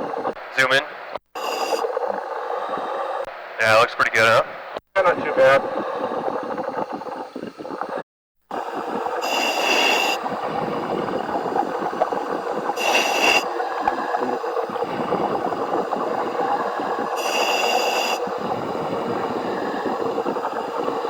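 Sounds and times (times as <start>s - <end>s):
regulator inhale hiss: 1.4s - 3.2s, 5.7s - 21.0s
exhaust bubbling: 5.0s - 21.0s.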